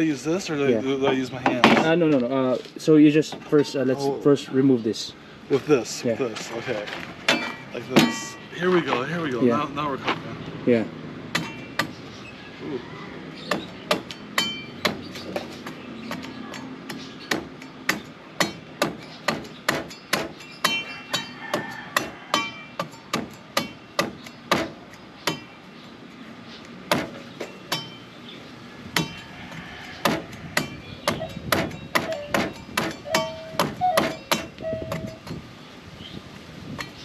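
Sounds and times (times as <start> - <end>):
machete chopping coconut husk: 13.5 - 25.6, 26.7 - 28.0, 28.9 - 34.5.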